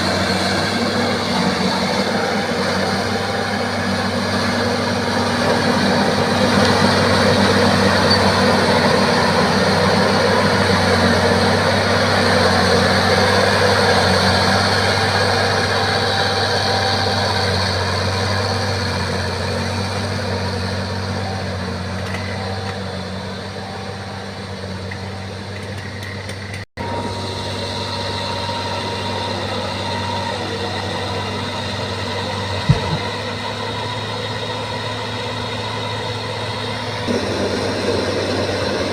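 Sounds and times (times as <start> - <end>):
heavy diesel engine running: 0.0 - 38.9
short knock: 32.6 - 33.1.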